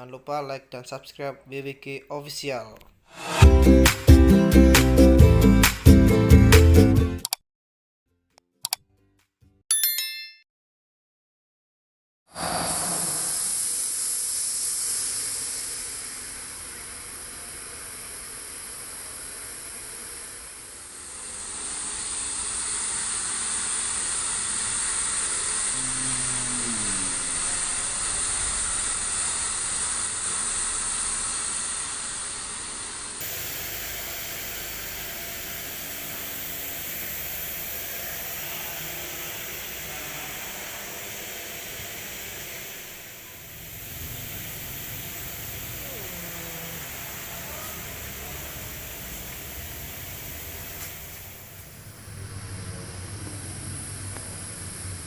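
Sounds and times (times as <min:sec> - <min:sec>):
milling machine hissing: 0:12.4 - 0:55.0.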